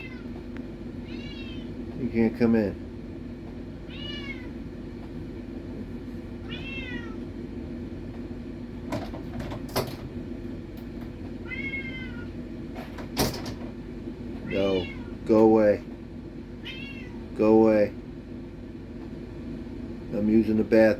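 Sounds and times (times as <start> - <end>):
cat meowing: 0.0 - 0.4, 1.0 - 1.8, 3.9 - 4.6, 6.4 - 7.3, 11.4 - 12.4, 14.4 - 15.2, 16.6 - 17.2
steady low hum: 0.0 - 20.9.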